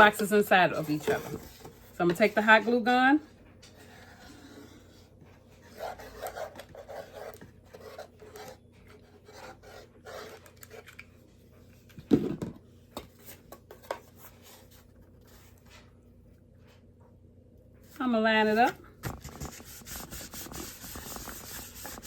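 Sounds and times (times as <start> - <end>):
cardboard rubbing and scraping: 18.6 - 22.0.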